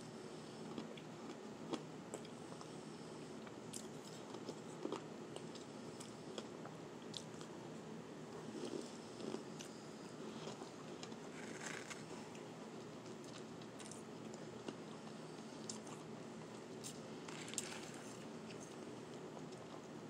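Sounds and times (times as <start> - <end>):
chewing shaved ice: 8.3 - 19.9.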